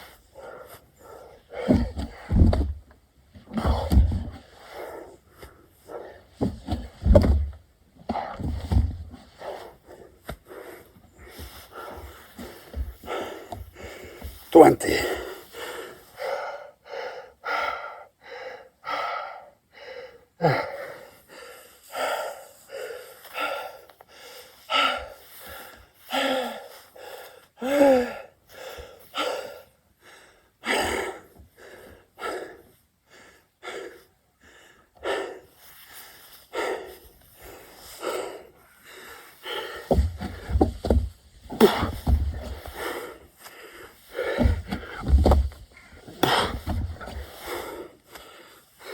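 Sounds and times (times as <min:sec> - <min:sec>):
man breathing hard: 0:00.0 - 0:02.8, 0:08.2 - 0:48.9
low thuds: 0:39.8 - 0:43.0, 0:44.2 - 0:47.3.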